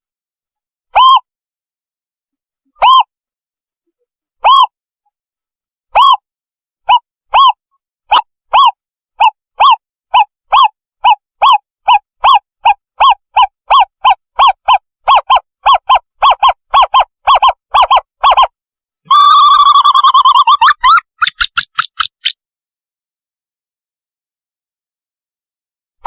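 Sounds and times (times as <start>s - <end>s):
recorded owl hooting: 6.9s - 18.5s.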